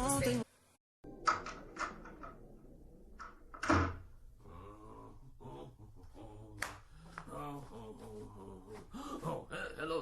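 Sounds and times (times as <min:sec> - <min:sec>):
door opening and closing: 0:01.1 - 0:04.2.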